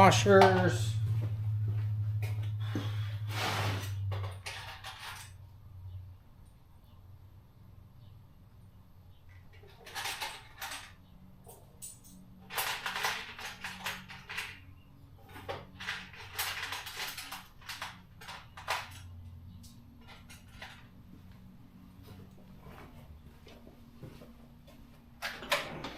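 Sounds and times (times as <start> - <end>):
metal nuts and washers clinking: 3.8 - 5.4, 9.4 - 21.0.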